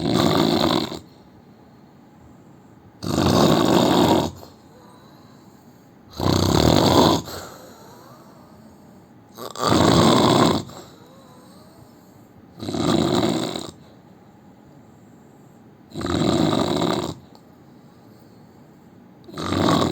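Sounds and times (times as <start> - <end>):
man snoring: 0.0 - 1.1, 3.0 - 5.3, 6.1 - 8.6, 9.4 - 11.8, 12.6 - 13.8, 15.9 - 17.2, 19.3 - 19.9.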